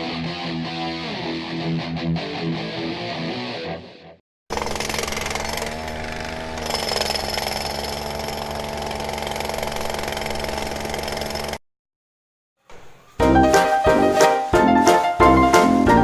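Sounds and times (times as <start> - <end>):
music: 0.0 - 4.2, 13.2 - 16.0.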